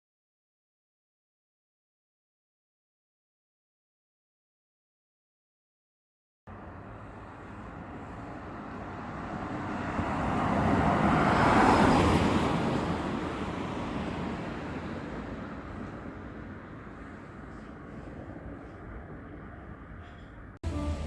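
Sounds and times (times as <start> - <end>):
vehicle passing by: 6.5 - 19.6.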